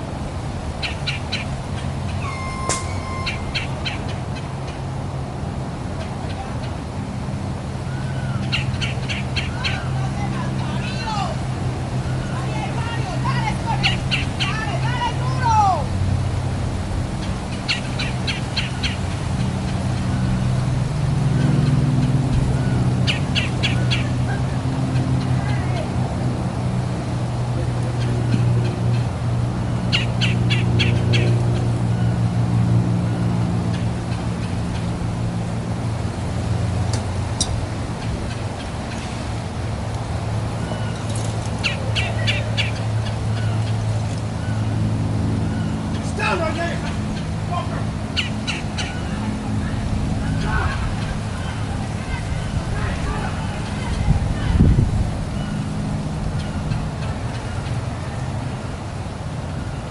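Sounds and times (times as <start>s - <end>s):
steady low motor hum: 0.0s - 59.9s
vehicle engine running: 0.0s - 59.9s
bird chirping sharply: 2.1s - 4.1s.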